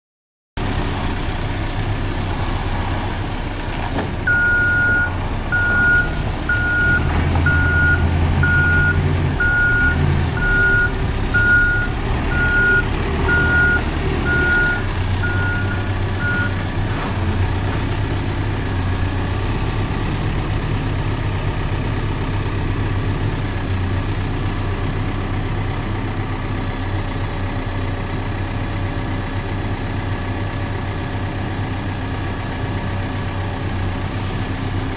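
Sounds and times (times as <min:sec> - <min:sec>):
backhoe diesel engine running: 0:00.6 - 0:34.9
reverse alarm beeping: 0:04.3 - 0:16.6.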